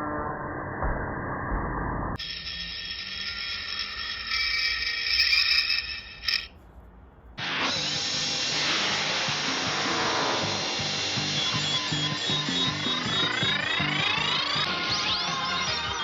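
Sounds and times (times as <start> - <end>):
buzzing whirring mechanical effect: 7.7 - 14.7.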